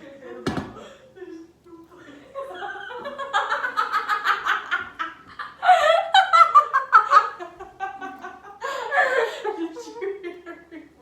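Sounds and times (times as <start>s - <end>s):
people laughing: 2.3s - 11.0s.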